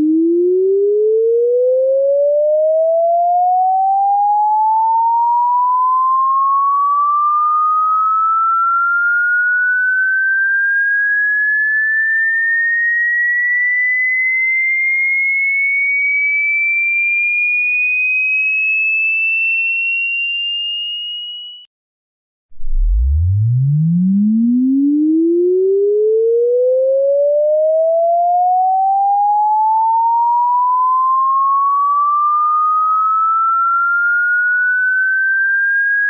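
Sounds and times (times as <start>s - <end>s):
rising electronic sine tone: 0.0s - 13.6s, 22.5s - 36.0s.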